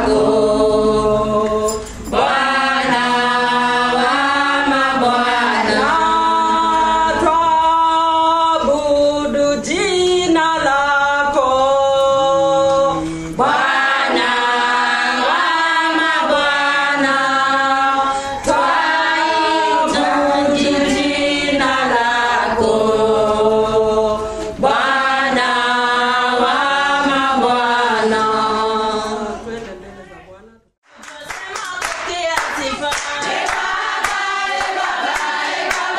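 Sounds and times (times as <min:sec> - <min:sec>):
choir singing a hymn: 0:00.0 - 0:29.8, 0:33.2 - 0:35.9.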